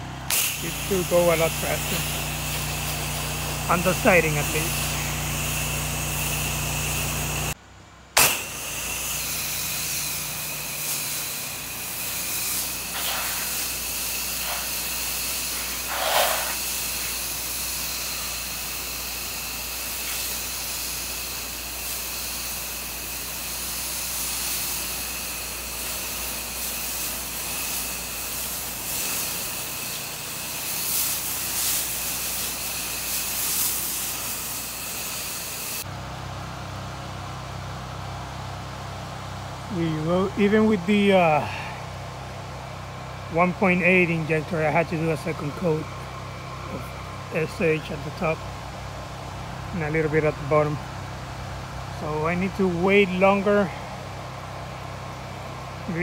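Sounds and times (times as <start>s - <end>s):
pressure washer spray hiss: 0.3s - 7.6s, 8.2s - 35.9s, 51.5s - 56.0s.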